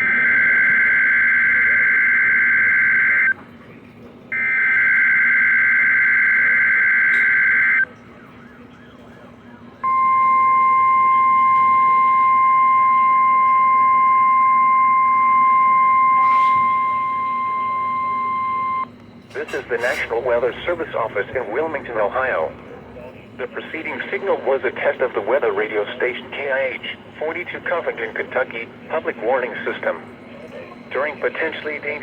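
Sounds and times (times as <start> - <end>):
steady warning alarm tone: 0.0 - 3.4, 4.3 - 22.6.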